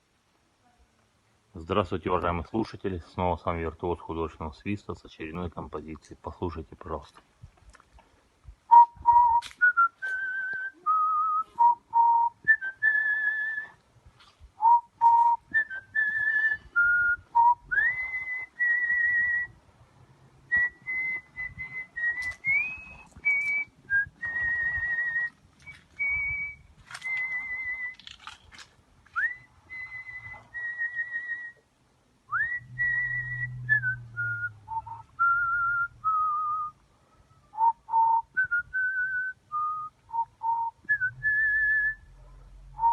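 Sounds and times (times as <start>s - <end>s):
person whistling a melody: 8.7s - 13.8s, 14.6s - 19.6s, 20.5s - 28.0s, 29.2s - 31.6s, 32.3s - 36.8s, 37.6s - 42.0s.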